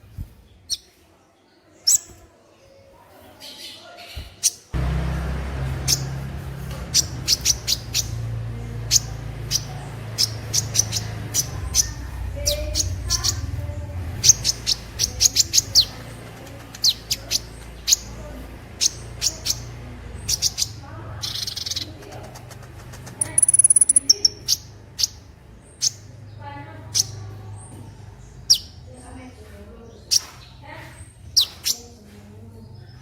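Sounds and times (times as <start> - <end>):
bird chirping: 1.7 - 4.8, 5.7 - 29.2
high bird trill: 1.8 - 2.2, 6.9 - 18.2, 23.2 - 26.1
buzzy bird note: 23.2 - 24.4.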